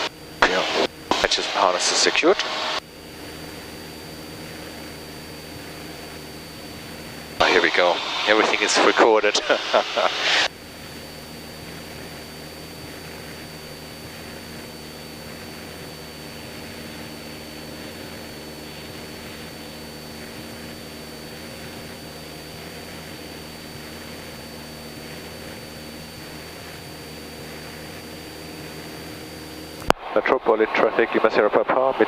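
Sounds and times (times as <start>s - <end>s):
airplane engine and propeller droning: 0.0s - 32.0s
thin high whine: 0.0s - 32.0s.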